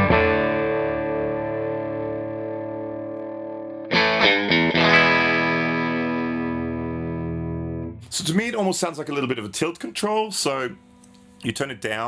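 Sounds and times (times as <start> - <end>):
electric guitar chords strummed: 0.0 - 8.0.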